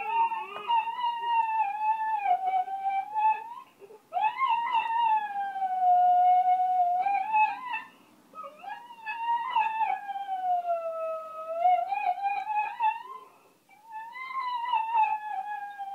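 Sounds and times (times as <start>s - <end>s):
dog howling: 0.0s - 15.9s.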